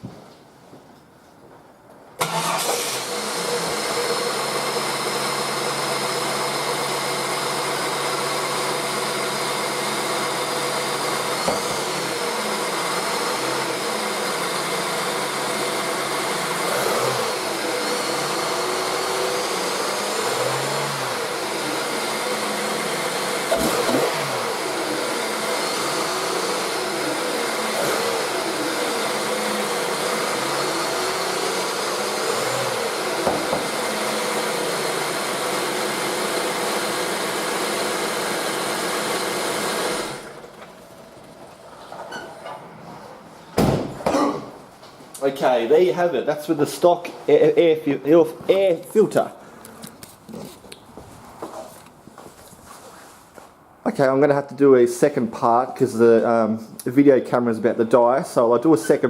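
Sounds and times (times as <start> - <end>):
car engine starting and idling: 2.2 - 44.0.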